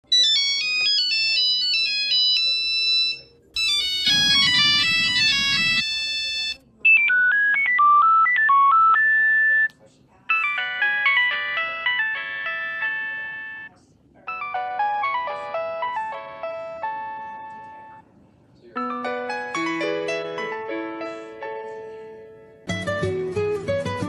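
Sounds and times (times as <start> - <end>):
electronic phone ringtone melodies: 0.0 - 9.7, 10.3 - 13.7, 14.3 - 18.0, 18.8 - 20.7.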